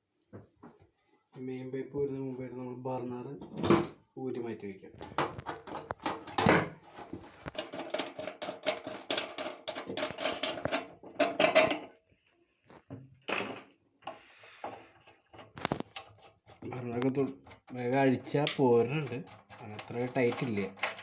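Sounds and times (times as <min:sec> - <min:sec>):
metallic clicking and scraping: 0:05.0 - 0:11.8, 0:15.0 - 0:21.0.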